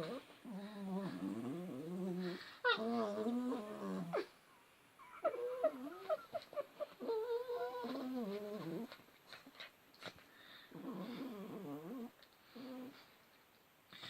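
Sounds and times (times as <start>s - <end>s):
dog whining: 0.0s - 4.3s, 5.0s - 9.0s.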